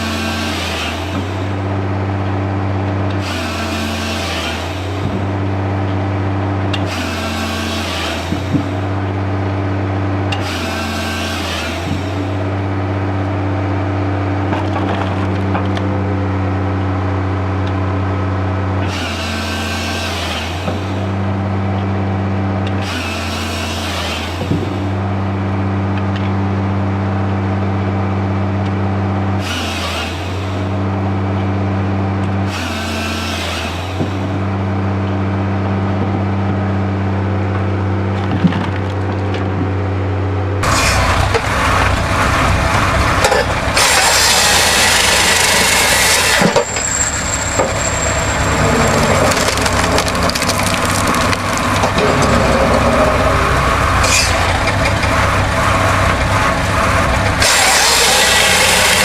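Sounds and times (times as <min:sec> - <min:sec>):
engine droning: 0:00.0 - 0:59.0
wood crackling and splintering: 0:14.3 - 0:16.1, 0:37.5 - 0:59.0.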